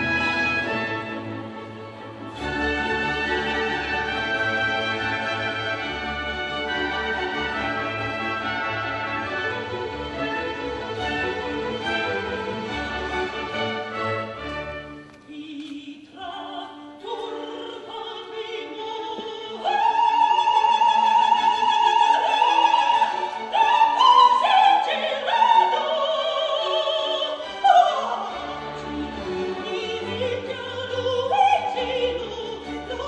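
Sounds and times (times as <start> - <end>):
symphony orchestra playing: 0.0 - 15.2, 16.3 - 33.0
soprano singing opera: 15.1 - 33.0.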